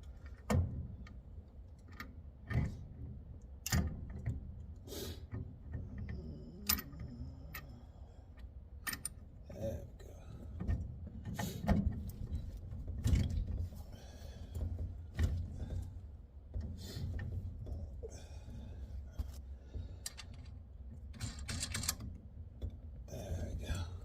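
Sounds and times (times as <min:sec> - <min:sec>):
metal clunks clicks and scraping: 0:19.2 - 0:22.8.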